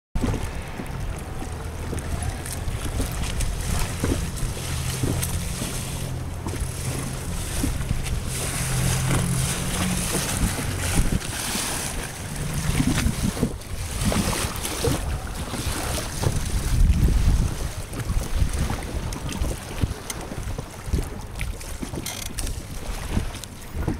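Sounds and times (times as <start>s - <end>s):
low steady hum: 0.2s - 14.2s
water splashing against boat hull: 0.2s - 23.9s
wind buffeting microphone: 0.2s - 23.9s.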